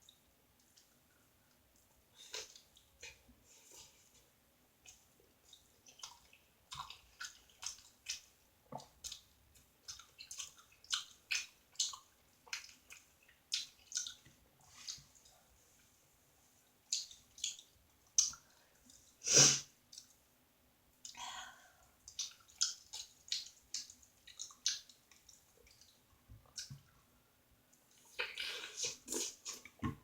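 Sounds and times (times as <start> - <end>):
wet chewing mouth sounds: 4.8 - 9.2, 9.8 - 15.3, 22.1 - 26.9.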